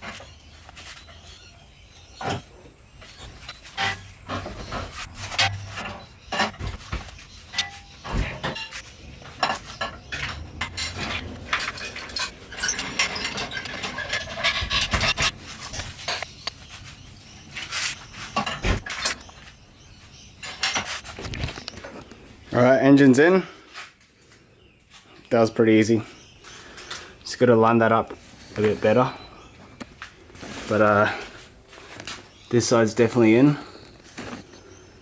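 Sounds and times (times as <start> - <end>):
light metal rattles: 3.7 - 16.3
metal clanks and knocks: 3.7 - 16.3.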